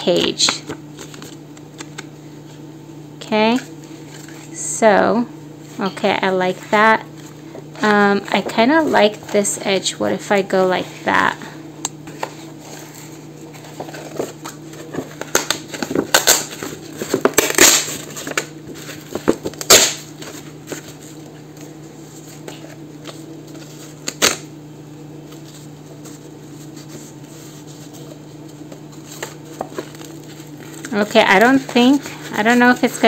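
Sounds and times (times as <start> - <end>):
low steady hum: 0.0 - 33.0
paper crinkling and rustling: 0.4 - 2.1, 3.6 - 4.5, 12.0 - 24.4, 25.2 - 33.0.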